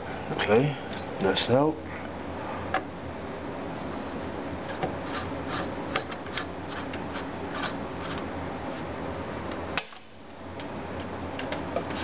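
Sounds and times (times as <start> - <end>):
steady low hum: 0.0 - 12.0
hands clicking and tapping parts: 10.6 - 11.9.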